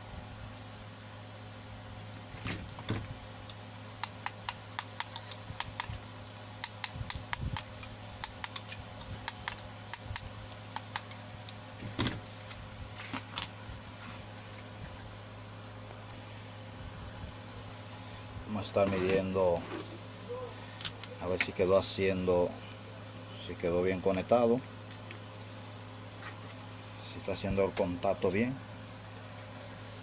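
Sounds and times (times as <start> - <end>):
low electrical hum: 0.0 - 30.0.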